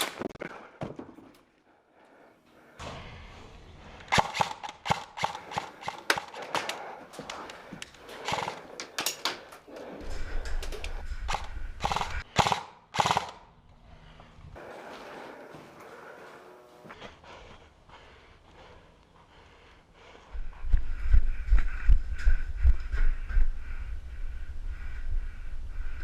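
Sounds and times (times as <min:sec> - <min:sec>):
airsoft guns firing: 0:04.1 - 0:06.7, 0:08.2 - 0:08.6, 0:11.3 - 0:13.5.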